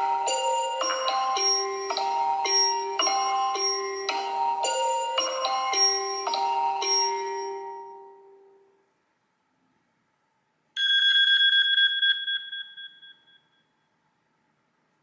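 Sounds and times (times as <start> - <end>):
chiming mallet ringtone: 0.0 - 8.6, 10.8 - 13.6
pulsing electronic phone ring: 10.8 - 13.7.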